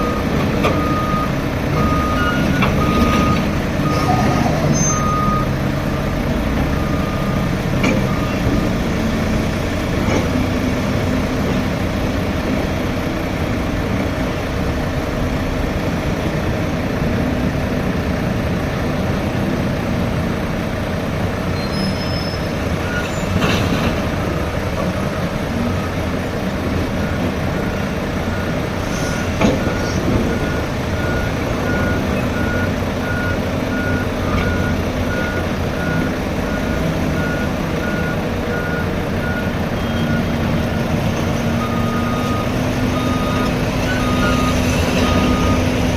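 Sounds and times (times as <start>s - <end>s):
reversing beeper: 0.0s - 6.1s, 41.6s - 45.8s
excavator engine running: 0.0s - 21.6s, 22.6s - 45.9s
tipper truck engine running: 0.0s - 45.9s.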